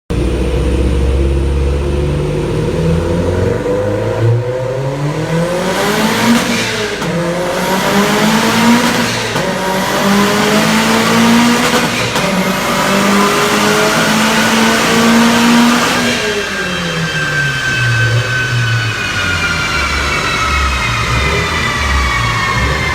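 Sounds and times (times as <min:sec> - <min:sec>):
car engine at full throttle: 0:00.1 - 0:22.9.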